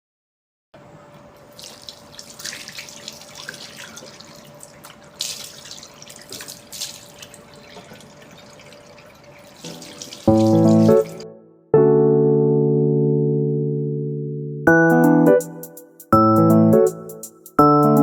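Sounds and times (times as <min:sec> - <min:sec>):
faint steady hum: 0:00.8 - 0:09.6
tap water splashing in sink: 0:01.6 - 0:11.2.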